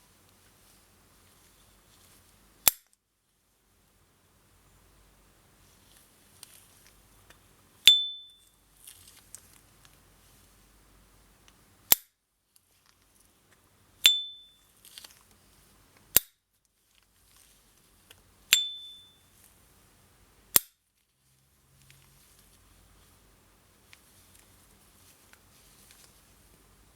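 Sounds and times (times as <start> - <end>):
lighter lid ringing ping: 7.9 - 8.4, 14.1 - 14.5, 18.5 - 19.2.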